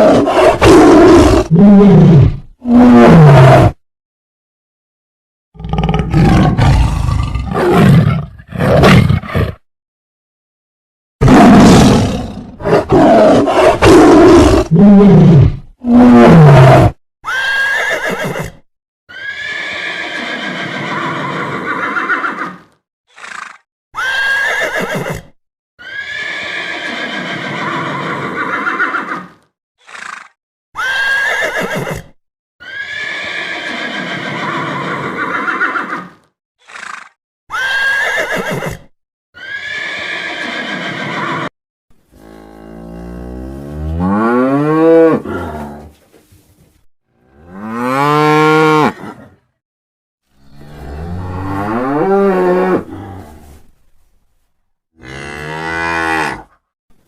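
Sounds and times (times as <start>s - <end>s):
large animal roaring: 0.0s - 3.8s, 5.6s - 9.6s, 11.2s - 17.0s, 50.4s - 53.4s.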